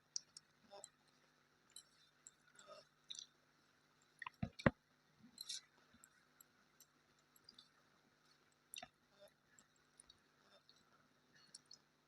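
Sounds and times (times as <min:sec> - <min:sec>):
soft mouth clicks and chewing: 0:00.1 - 0:01.0, 0:01.7 - 0:03.4, 0:05.3 - 0:07.8, 0:08.4 - 0:11.9.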